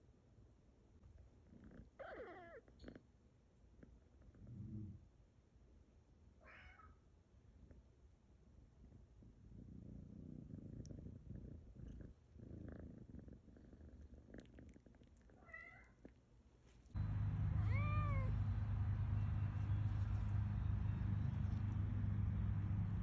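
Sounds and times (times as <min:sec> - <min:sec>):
cat meowing: 0:06.4 - 0:07.0, 0:17.4 - 0:18.4
steady low drone: 0:17.0 - 0:23.0.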